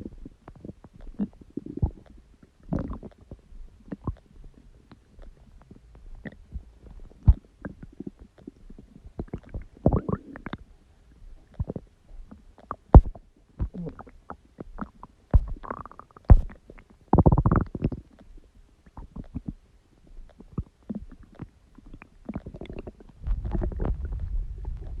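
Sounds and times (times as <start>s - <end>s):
stomach growling and gurgling: 0.0s - 25.0s.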